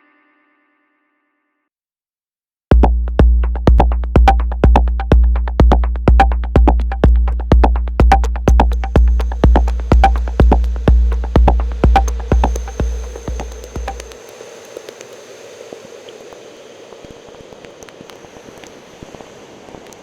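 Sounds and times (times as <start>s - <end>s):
kick drum: 2.7s - 14.2s
hi-hat ticks: 6.2s - 15.9s
synth bass note: 8.0s - 14.2s.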